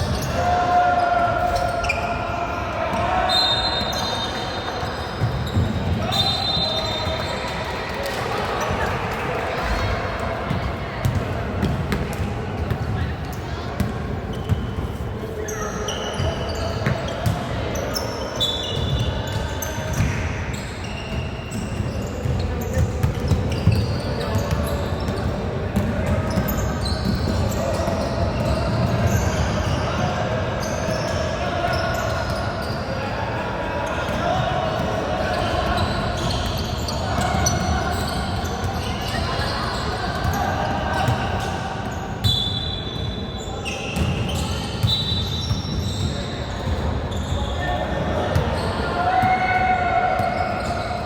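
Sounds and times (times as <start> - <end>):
sneakers squeaking on floor: 0.0 - 33.2, 33.8 - 51.0
basketball bouncing on court: 10.5 - 13.1, 16.2 - 17.5, 21.2 - 29.6, 44.0 - 47.4.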